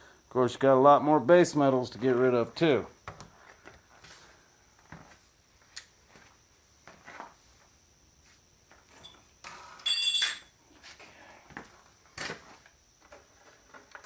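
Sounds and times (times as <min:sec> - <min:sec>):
metallic clattering clink: 0:09.8 - 0:10.5.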